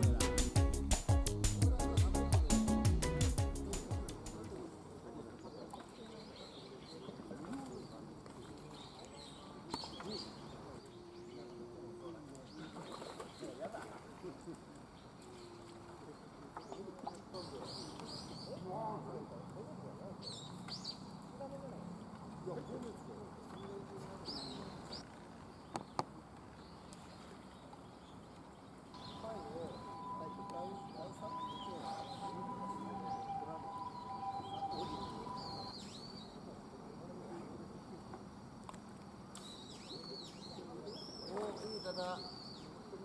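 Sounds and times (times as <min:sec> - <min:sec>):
outdoor background hiss: 0:00.0 - 0:05.6, 0:14.8 - 0:43.0
distant murmuring voices: 0:29.0 - 0:38.4.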